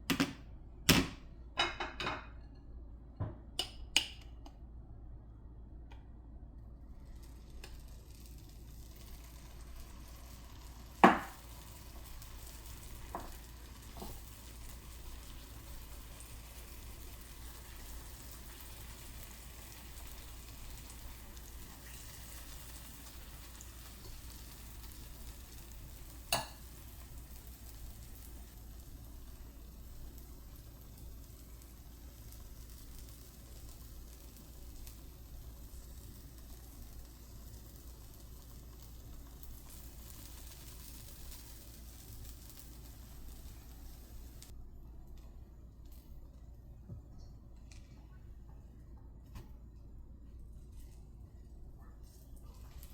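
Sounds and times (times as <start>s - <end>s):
pancakes sizzling in a frying pan: 6.7s - 44.6s, 52.5s - 52.9s.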